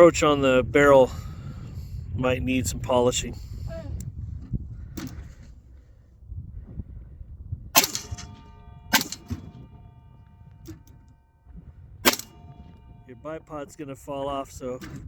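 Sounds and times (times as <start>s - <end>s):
rifle shots: 7.8s - 11.0s, 12.0s - 13.5s
ringing tone: 8.0s - 14.8s.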